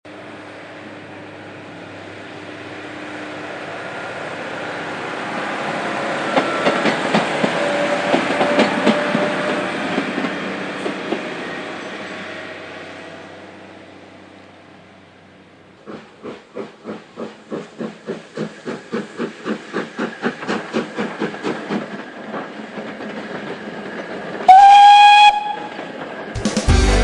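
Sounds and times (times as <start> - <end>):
train rumbling past: 0.1 - 27.0
wheels clicking over rail joints: 6.2 - 11.4, 15.8 - 24.6, 25.3 - 26.4.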